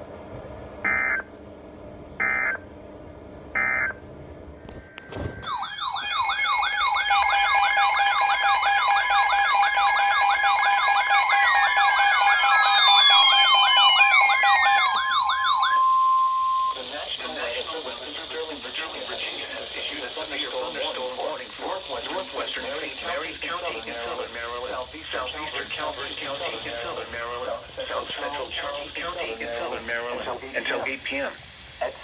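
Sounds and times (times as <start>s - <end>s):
electronic sirens warbling: 0.9s - 1.3s, 2.2s - 2.6s, 3.6s - 4.0s, 4.7s - 17.0s
falling tones: 4.8s - 16.6s
steady single tone: 15.7s - 16.8s.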